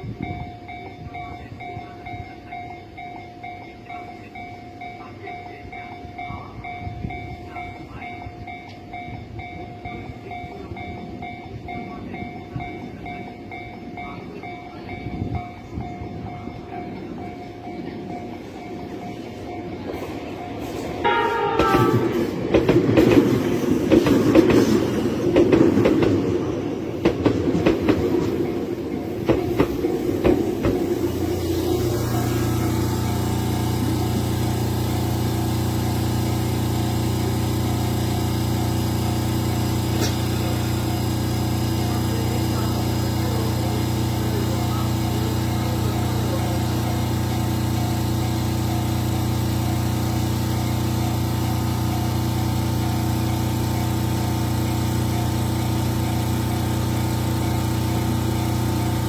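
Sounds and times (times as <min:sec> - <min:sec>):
train wheels clacking over joints: 0:17.4 - 0:34.2.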